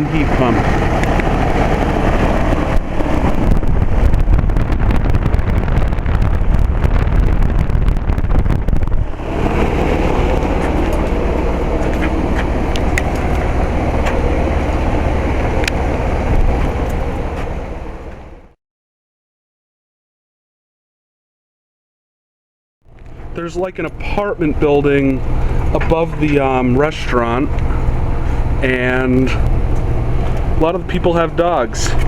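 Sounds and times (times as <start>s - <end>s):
heat pump running: 0.0s - 18.6s, 23.0s - 32.0s.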